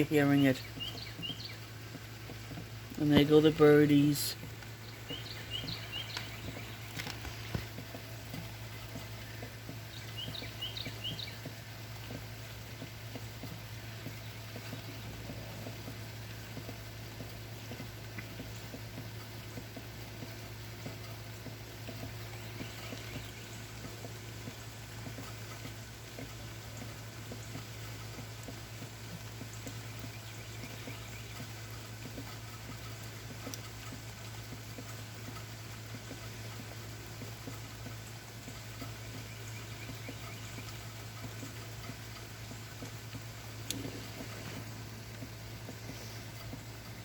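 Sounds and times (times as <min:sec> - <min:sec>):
bird chirping: 0:00.0 - 0:12.4, 0:21.4 - 0:28.3, 0:29.4 - 0:33.6, 0:38.4 - 0:47.0
low steady hum: 0:00.0 - 0:47.0
rain falling: 0:00.0 - 0:47.0
water drips: 0:00.0 - 0:47.0.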